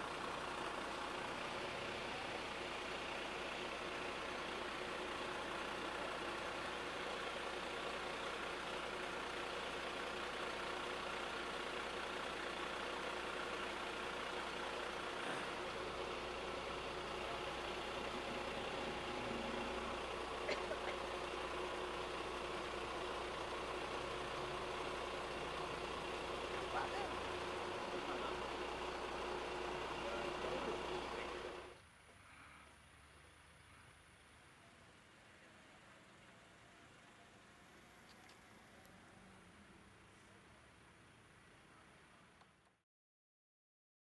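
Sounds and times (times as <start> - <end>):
steady mechanical hum: 0.0 - 42.4
faint clicks: 37.8 - 39.0.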